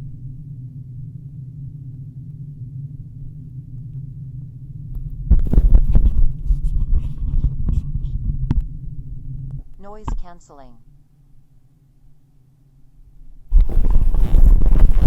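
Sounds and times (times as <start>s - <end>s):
airplane cabin hum: 0.0s - 10.8s
microphone handling noise: 4.9s - 10.4s, 13.5s - 15.0s.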